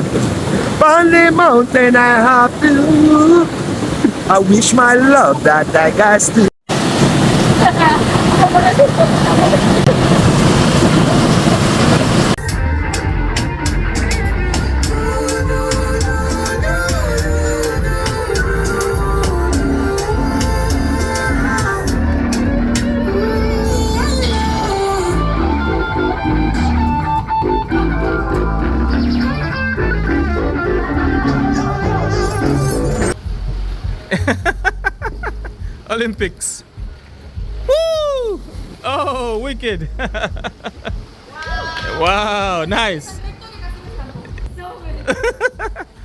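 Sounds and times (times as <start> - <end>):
loud rushing noise: 6.7 - 12.5
guitar over bass beat: 12.4 - 41.2
music with drum hits: 33.2 - 35.8, 36.8 - 37.6.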